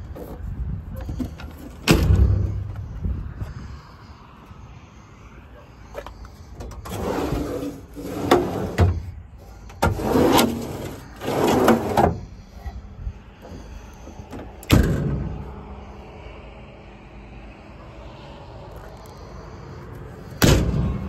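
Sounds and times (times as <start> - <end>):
metal door slamming: 1.8 - 2.6
metal doors rattling and scraping: 6.7 - 12.3.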